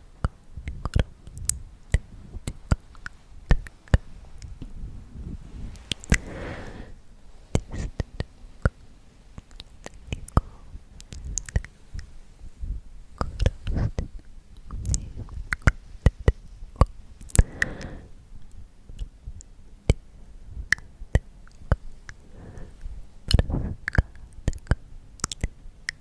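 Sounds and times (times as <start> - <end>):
soft rubbing near microphone: 3.2 - 8.4, 22.2 - 23.9.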